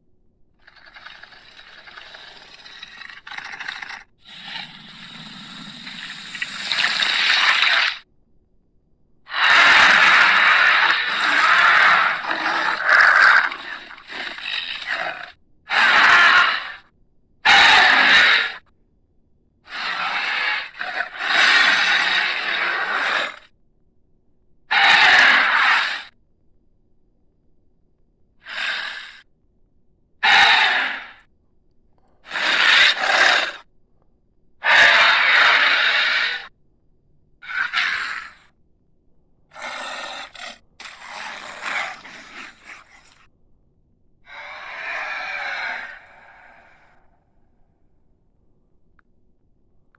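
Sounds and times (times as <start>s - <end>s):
dinosaur hissing snarls: 0.7s - 8.0s, 9.3s - 16.9s, 17.5s - 18.7s, 19.7s - 23.5s, 24.7s - 26.1s, 28.4s - 29.3s, 30.2s - 31.3s, 32.2s - 33.7s, 34.6s - 36.5s, 37.4s - 38.5s, 39.5s - 43.3s, 44.2s - 47.1s
creature breathy hissing exhalations: 28.4s - 29.2s.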